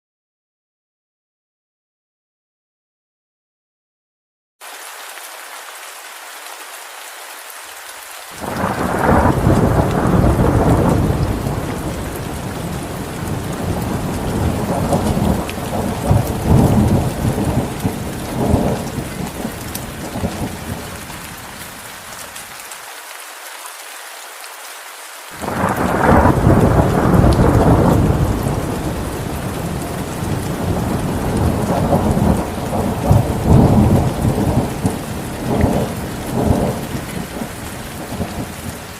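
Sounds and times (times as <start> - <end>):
steady rain: 4.6 - 38.9
rolling thunder: 8.4 - 20.9, 25.4 - 38.7.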